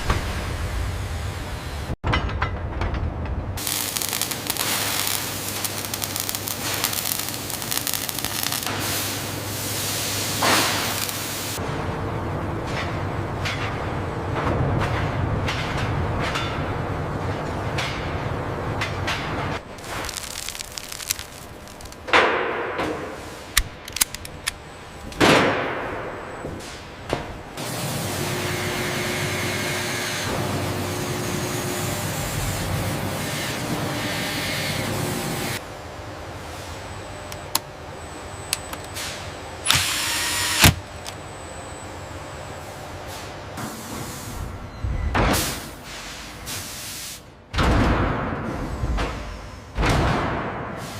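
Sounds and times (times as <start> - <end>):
steady loud hiss: 3.6 - 11.6.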